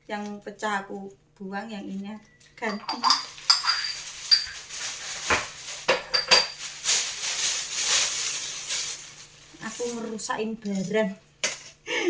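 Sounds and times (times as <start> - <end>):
glass lids clinking: 2.6 - 6.6
rustling of unpacking: 2.8 - 11.0.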